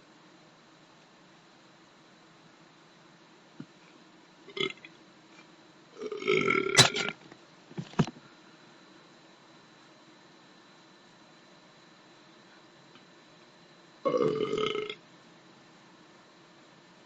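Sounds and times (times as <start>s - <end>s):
man belching: 4.5s - 4.8s, 14.1s - 15.0s.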